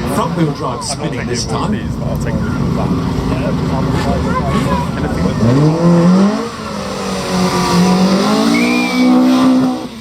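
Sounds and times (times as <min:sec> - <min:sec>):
rally car engine accelerating: 0:00.0 - 0:10.0
tyre squeal: 0:08.4 - 0:09.8.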